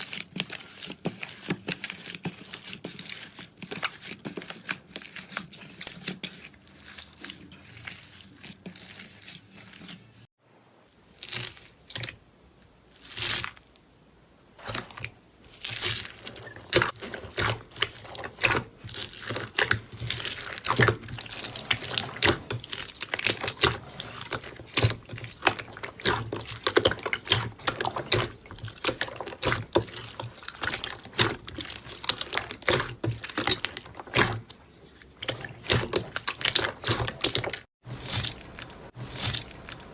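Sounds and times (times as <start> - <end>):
slime squishes: 0.0 - 10.3, 11.0 - 12.2, 14.6 - 39.9
slime crackling and popping: 35.5 - 39.9.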